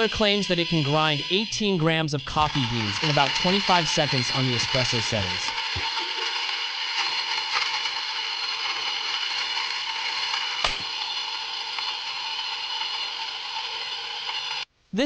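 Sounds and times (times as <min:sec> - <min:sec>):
electric coffee grinder whining: 0:00.0 - 0:14.7
sharp crack: 0:10.6 - 0:11.0.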